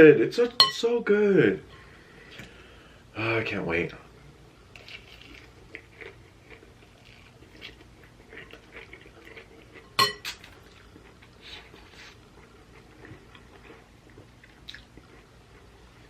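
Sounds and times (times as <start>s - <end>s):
cutlery clinking against plate: 9.9s - 10.4s.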